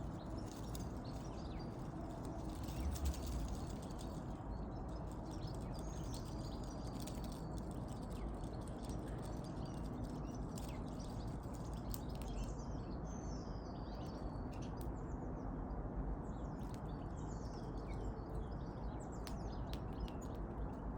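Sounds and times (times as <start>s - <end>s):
steady low rumble: 0.0s - 12.5s
songbirds chirping: 0.0s - 20.9s.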